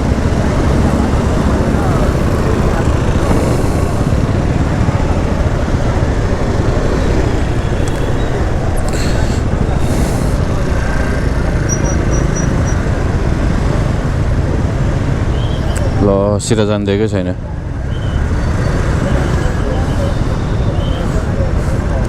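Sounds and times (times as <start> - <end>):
wind rumble on microphone: 0.0 - 16.0
road traffic noise: 0.0 - 22.0.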